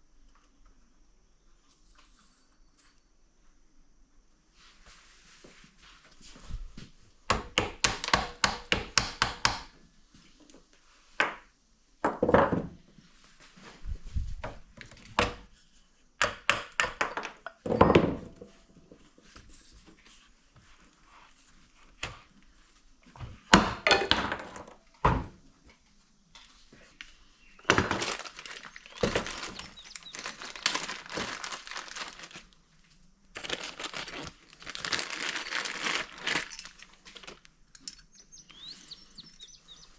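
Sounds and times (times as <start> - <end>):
rustling: 25.7 - 39.9
tools and parts clicking: 36.4 - 38.1.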